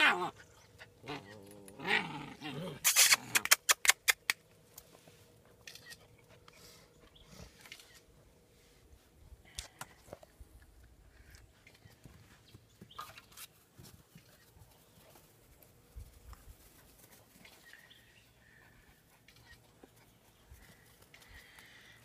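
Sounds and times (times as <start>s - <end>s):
puppies play-growling: 0.0s - 4.3s.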